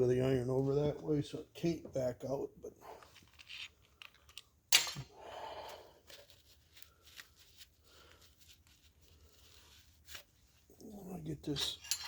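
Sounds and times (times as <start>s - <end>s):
rustling scraping handling noise: 3.0s - 4.4s, 6.0s - 12.0s.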